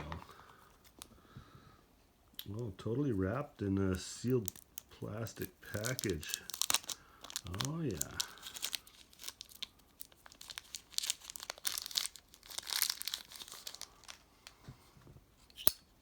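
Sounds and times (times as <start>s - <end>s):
plastic wrapping tearing and crinkling: 4.4s - 14.2s.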